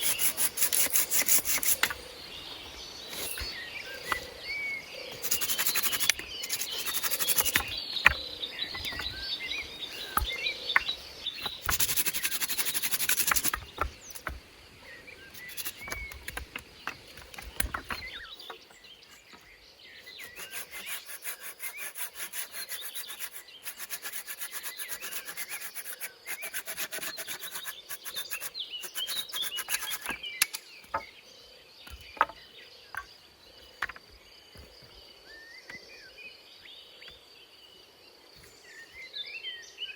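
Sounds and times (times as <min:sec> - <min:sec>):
wood sawn by hand: 0:00.0 - 0:02.1, 0:05.1 - 0:19.5, 0:20.2 - 0:31.1
birds chirping: 0:00.0 - 0:39.9
insects chirping: 0:00.0 - 0:39.9
wood knocking: 0:13.3 - 0:14.4, 0:15.9 - 0:18.6, 0:31.9 - 0:33.1.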